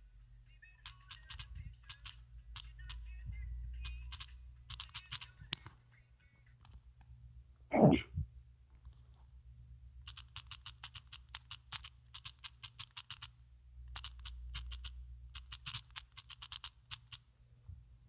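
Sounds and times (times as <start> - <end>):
steady low hum: 0.0 - 18.0
keystroke clicks typing: 0.8 - 3.1, 3.8 - 5.7, 10.1 - 13.3, 13.9 - 17.2.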